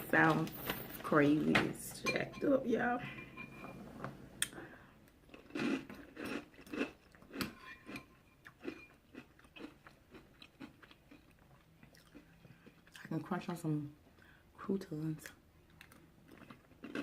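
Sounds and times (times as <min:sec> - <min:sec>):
person chewing and smacking: 0:04.4 - 0:13.1, 0:15.6 - 0:17.0.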